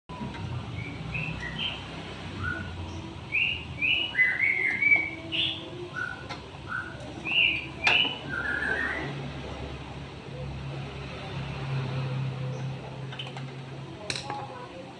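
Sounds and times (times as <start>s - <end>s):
small birds chirping: 0.6s - 9.2s.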